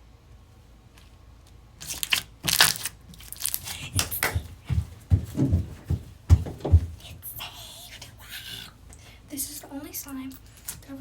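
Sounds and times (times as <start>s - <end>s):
plastic packaging crinkling: 1.8s - 4.2s
dull thumps: 3.6s - 7.1s.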